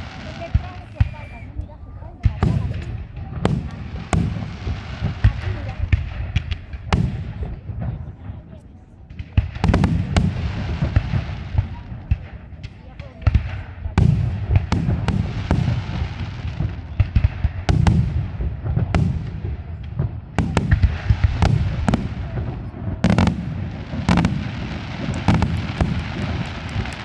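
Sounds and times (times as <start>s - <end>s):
fireworks bangs: 0.0s - 27.0s
fireworks hissing and crackling: 0.0s - 27.0s.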